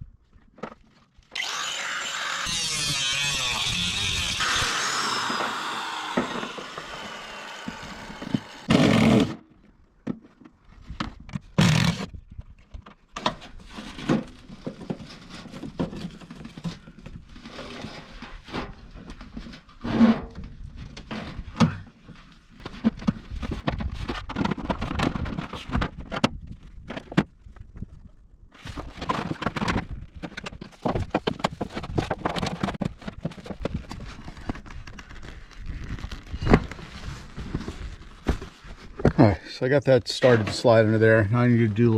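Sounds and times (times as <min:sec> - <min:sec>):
buzzing power tool: 0:01.4 - 0:09.4.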